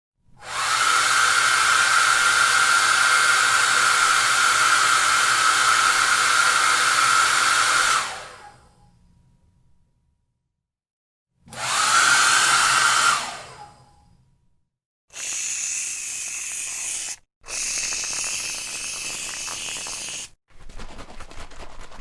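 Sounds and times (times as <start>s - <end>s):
hair dryer blowing: 0.4s - 8.4s, 11.5s - 13.7s, 15.1s - 20.4s
aerosol spray hissing: 15.1s - 20.4s.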